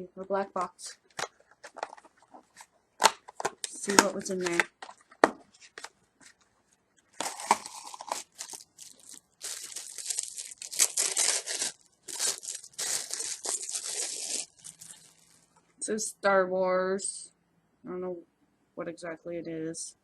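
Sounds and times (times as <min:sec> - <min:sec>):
packaging tearing and crinkling: 0:01.2 - 0:05.0, 0:07.2 - 0:15.4.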